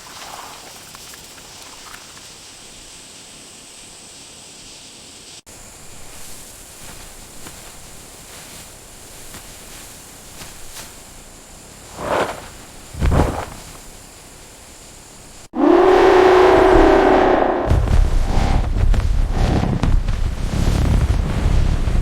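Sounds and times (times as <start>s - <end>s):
outdoor ambient hiss: 0.0s - 15.6s
faint rustling: 5.9s - 14.3s.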